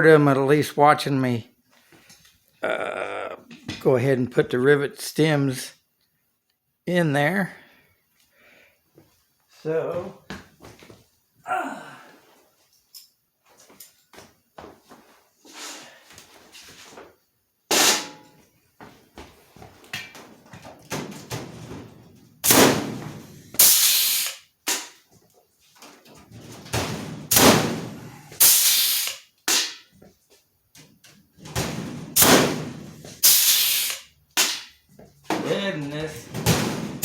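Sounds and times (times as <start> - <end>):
rivet gun snaps: 23.6 - 25.0, 28.4 - 29.8, 33.3 - 34.7.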